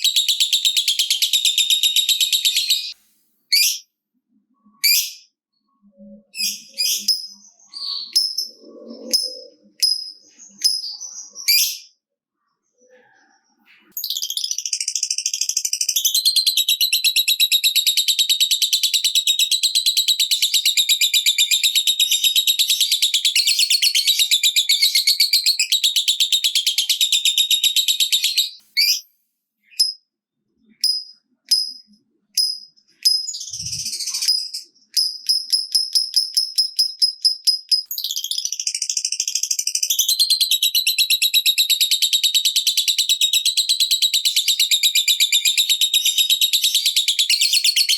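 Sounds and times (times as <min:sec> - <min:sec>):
lovebird rapid trill: 0:08.0 - 0:10.9, 0:30.8 - 0:47.9
lovebird ticking: 0:09.2 - 0:10.8, 0:30.8 - 0:33.6, 0:34.2 - 0:38.5.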